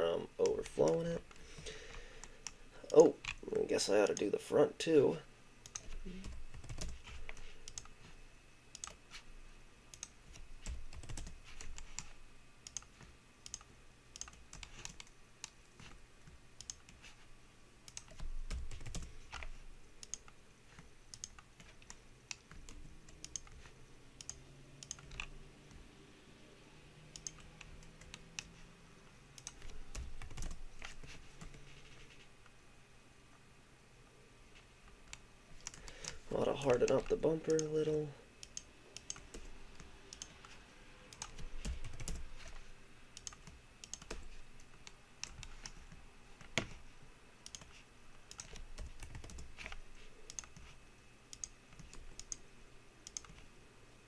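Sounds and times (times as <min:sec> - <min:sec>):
faint steady hum: 0:00.0 - 0:54.0
keyboard and mouse clicking: 0:05.6 - 0:08.0, 0:08.7 - 0:09.0, 0:09.9 - 0:17.1, 0:17.9 - 0:23.6, 0:24.2 - 0:25.8, 0:27.1 - 0:28.6, 0:29.4 - 0:32.2, 0:34.9 - 0:37.8, 0:38.4 - 0:42.6, 0:43.2 - 0:46.8, 0:47.4 - 0:52.4, 0:53.0 - 0:53.4.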